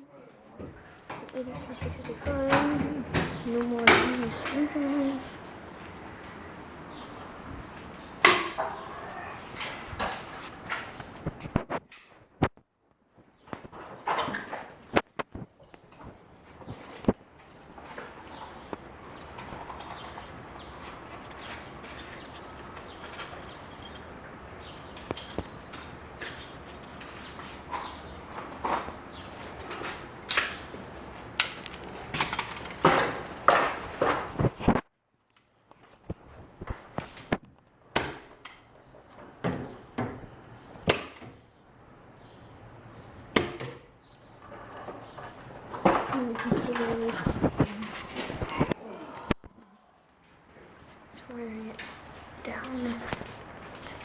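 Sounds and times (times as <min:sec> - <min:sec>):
background noise: 0:00.0 - 0:54.0
handling noise: 0:00.6 - 0:12.3, 0:41.9 - 0:48.8.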